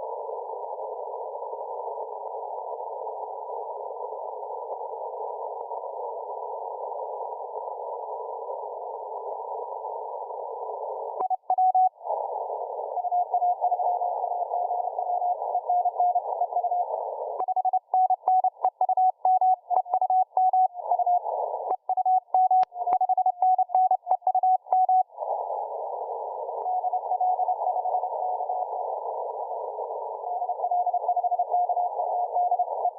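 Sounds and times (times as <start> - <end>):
radio hiss: 12.0 - 19.0, 19.7 - 22.2, 22.8 - 32.9.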